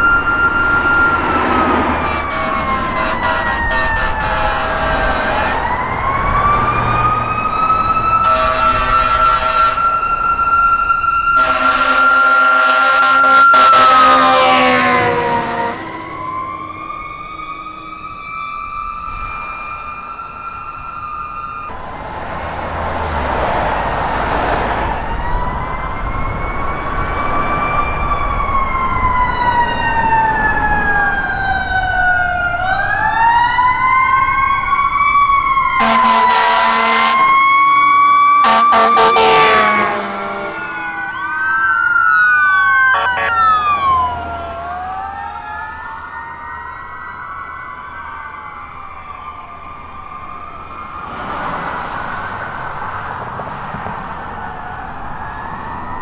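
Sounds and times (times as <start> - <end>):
vehicle rumbling past: 0.0 - 9.2, 10.0 - 19.8, 21.7 - 41.9, 42.6 - 46.2, 50.0 - 56.0
sirens wailing: 0.0 - 56.0
horn blasts: 1.7 - 5.9, 8.1 - 10.1, 11.3 - 16.2, 35.8 - 41.1, 42.8 - 44.2.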